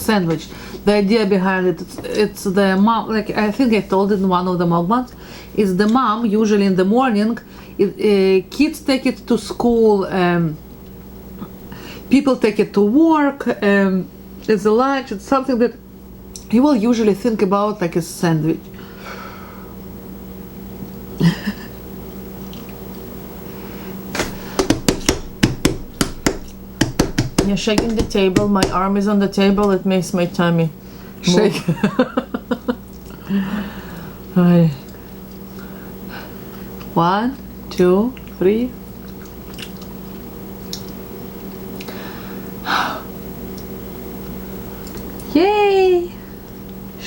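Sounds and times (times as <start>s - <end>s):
steady low hum: 0.0s - 47.0s
person gasping: 33.2s - 34.1s
chewing and mouth sounds: 39.0s - 41.0s.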